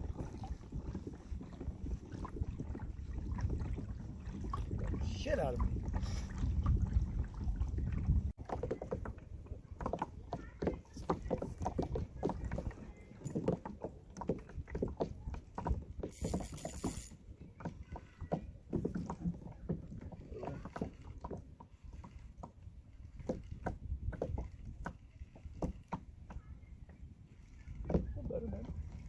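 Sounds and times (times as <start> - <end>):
water lapping against hull: 0.0 - 29.0
small knocks: 9.8 - 27.0.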